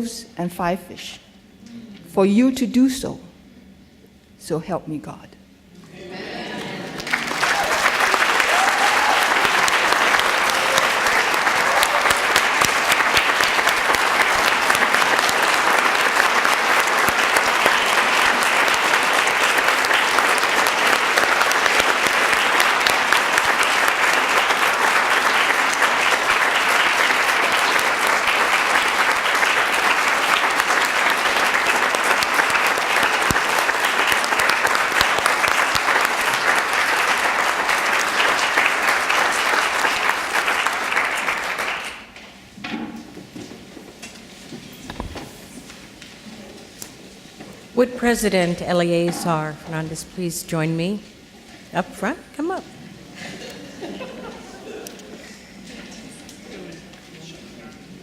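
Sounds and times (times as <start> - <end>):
congregation applauding: 6.1 - 42.2.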